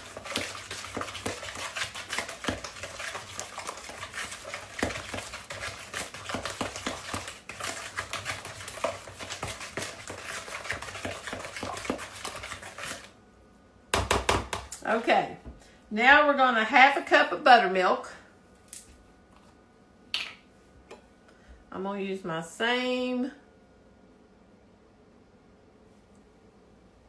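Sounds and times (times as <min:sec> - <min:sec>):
utensil stirring batter in bowl: 0:00.0 - 0:13.2.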